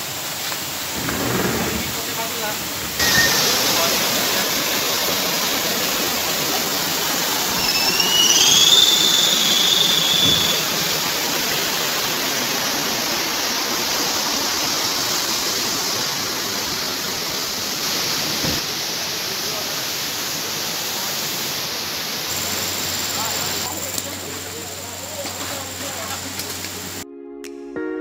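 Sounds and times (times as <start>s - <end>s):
river water rushing: 0.0s - 27.0s
high whistle: 3.0s - 3.6s, 7.4s - 11.0s.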